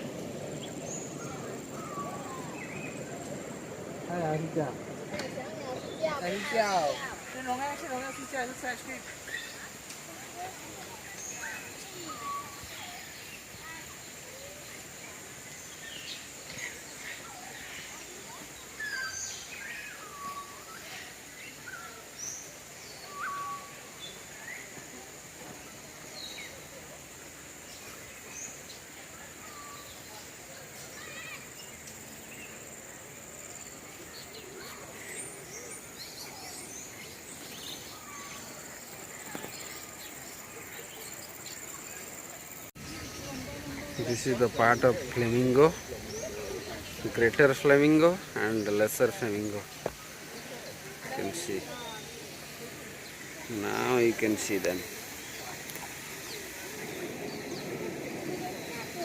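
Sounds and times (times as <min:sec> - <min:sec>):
birds chirping and calling: 0:00.0 - 0:24.6, 0:31.0 - 0:59.0
distant people talking: 0:00.0 - 0:59.0
murmur of distant voices: 0:00.0 - 0:59.0
birds whistling and chirping: 0:22.9 - 0:24.6.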